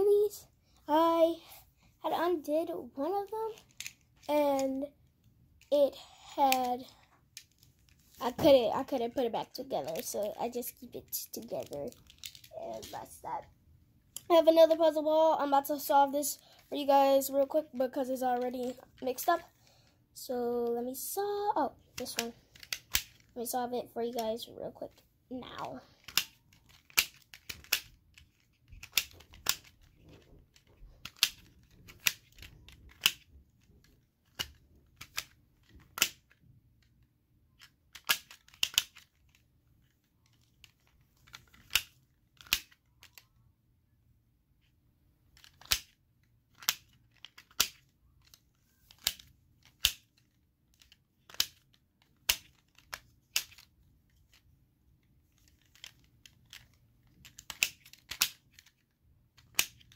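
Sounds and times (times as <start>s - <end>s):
plastic toy clicking: 3.5s - 4.8s, 22.0s - 23.3s, 25.6s - 37.0s, 37.6s - 39.4s, 40.2s - 43.4s, 45.3s - 54.4s, 55.3s - 59.9s.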